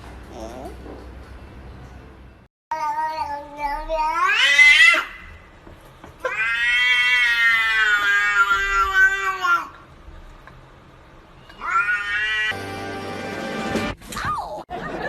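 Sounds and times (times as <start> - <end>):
cat yowling: 6.2 - 9.7, 11.5 - 12.6.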